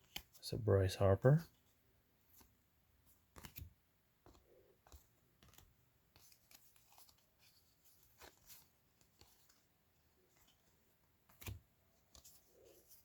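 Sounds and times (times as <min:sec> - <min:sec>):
trading cards sliding and flipping: 0:03.2 - 0:09.6.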